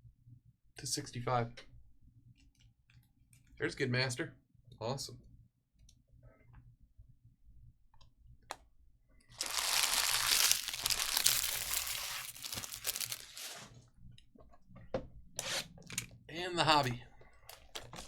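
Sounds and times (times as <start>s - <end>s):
wrapper tearing and crinkling: 9.4s - 13.7s.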